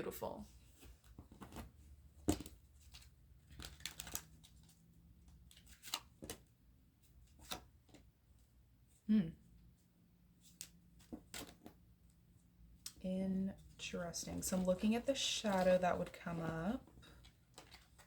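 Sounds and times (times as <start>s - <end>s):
cards rustling and tapping: 0.7s - 8.2s, 10.4s - 18.0s.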